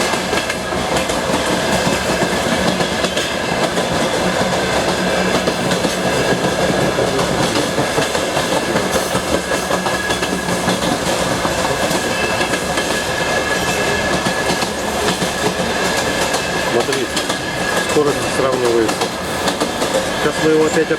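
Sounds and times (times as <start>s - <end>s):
train rumble: 0.0s - 20.9s
train wheels clicking over rail joints: 0.0s - 20.9s.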